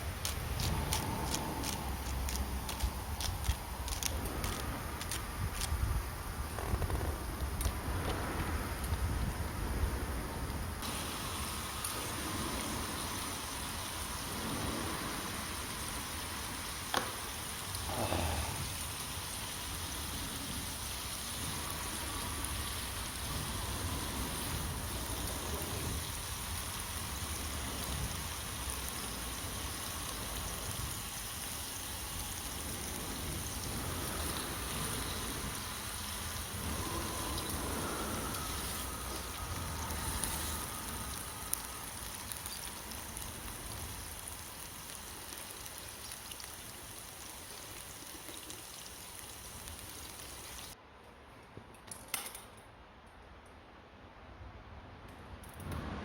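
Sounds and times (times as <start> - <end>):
rushing water noise: 6.6 - 50.8.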